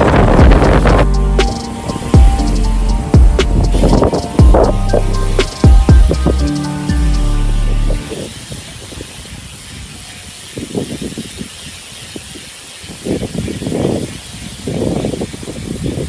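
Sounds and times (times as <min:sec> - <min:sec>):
steady hiss: 0:00.0 - 0:16.0.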